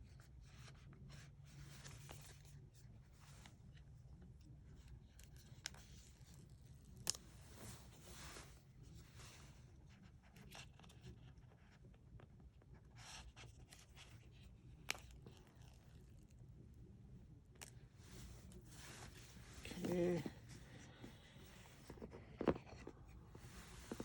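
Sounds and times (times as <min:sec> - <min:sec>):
packaging rustling and scraping: 0:21.5 - 0:24.0.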